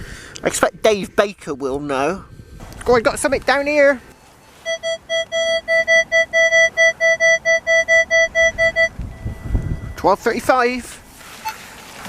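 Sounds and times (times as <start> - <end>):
metal detector beeps: 4.1 - 10.1.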